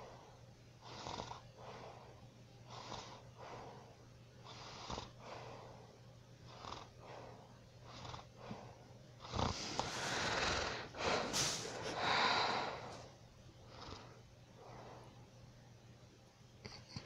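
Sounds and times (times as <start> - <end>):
person snoring: 9.3 - 13.0.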